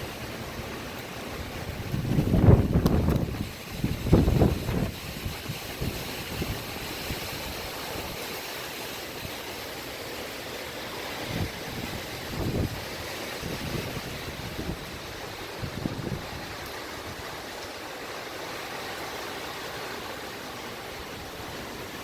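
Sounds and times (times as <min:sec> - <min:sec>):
strong gusty wind: 0:00.0 - 0:09.6, 0:10.7 - 0:19.9
wind buffeting microphone: 0:01.0 - 0:08.3, 0:11.1 - 0:17.6.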